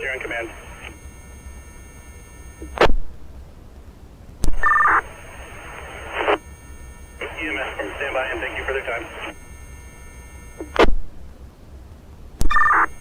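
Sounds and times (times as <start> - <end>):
radio channel hiss: 0.0 - 2.9, 4.4 - 11.0, 12.4 - 13.0
radio squelch burst: 0.0 - 2.9, 4.4 - 11.0
radio key-up click: 2.6 - 2.9, 10.5 - 10.9
warbling two-tone data burst: 12.5 - 13.0.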